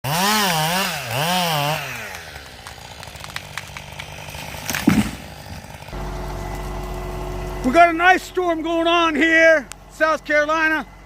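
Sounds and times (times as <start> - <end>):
chainsaw engine revving: 0.0 - 11.0
loud thump: 4.7 - 5.7.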